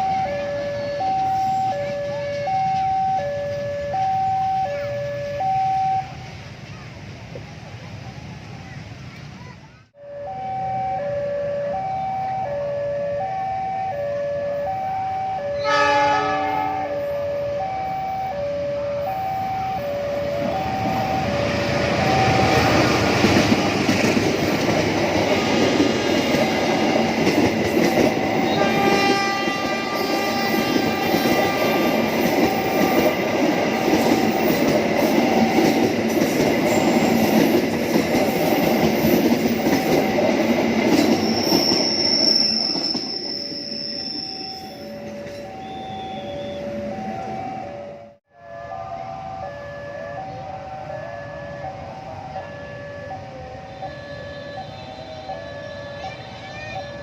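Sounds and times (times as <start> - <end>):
level crossing warning bell: 0.0 - 6.3, 10.0 - 57.0
train passing with wheel clatter: 0.0 - 57.0
train horn blast: 15.5 - 17.4, 28.4 - 32.1, 53.6 - 56.5.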